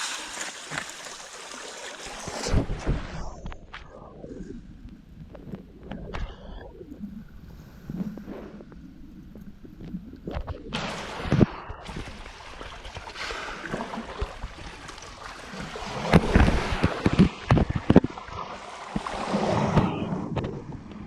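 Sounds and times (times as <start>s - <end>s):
lake waves washing: 0.0s - 3.2s, 10.7s - 20.3s.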